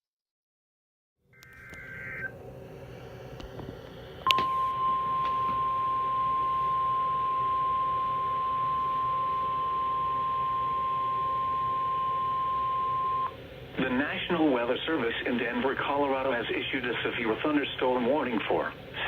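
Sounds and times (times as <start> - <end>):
warbling data buzz: 1.4 - 2.3
steady alarm tone: 1.4 - 2.4, 4.3 - 13.5
radio hiss: 1.4 - 3.3, 13.0 - 19.0.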